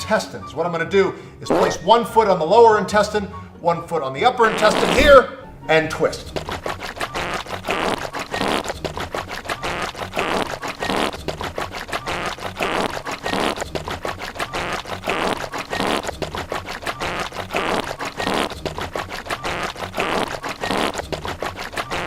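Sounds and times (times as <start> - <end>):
looped fart sound effects: 1.5 - 1.8, 4.4 - 5.4, 6.3 - 22.0
fast stutter of short pops: 6.4 - 22.0.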